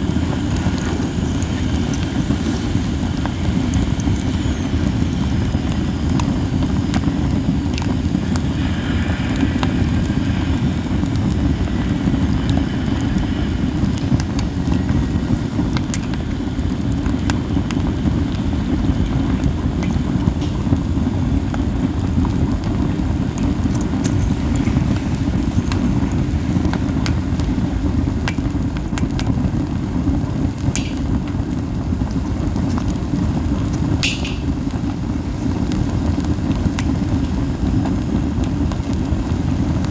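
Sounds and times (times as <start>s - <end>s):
fire crackles and pops: 0.0s - 39.9s
fire whooshing rumble: 0.0s - 39.9s
wind: 0.0s - 39.9s.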